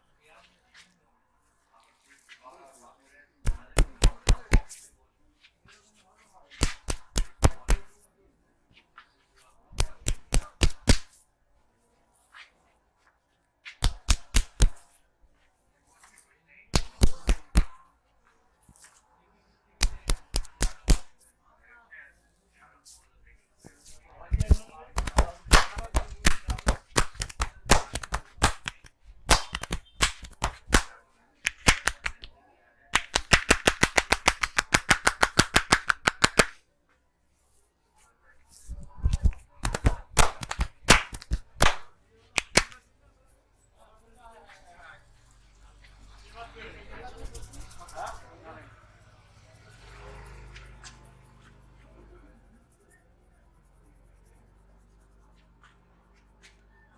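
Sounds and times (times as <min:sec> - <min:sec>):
hands slapping in massage: 0:03.5 - 0:04.9, 0:06.5 - 0:08.0, 0:09.8 - 0:11.2, 0:13.7 - 0:15.0, 0:16.0 - 0:17.8, 0:19.8 - 0:21.3, 0:23.7 - 0:32.3, 0:33.0 - 0:36.6, 0:38.6 - 0:42.8.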